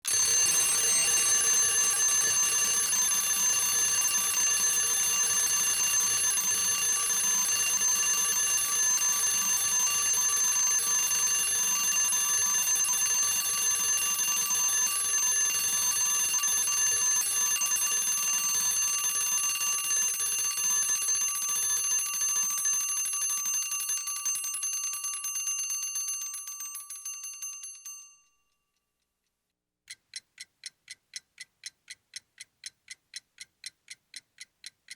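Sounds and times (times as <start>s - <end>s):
alarm clock bell ringing: 0.1s - 28.4s.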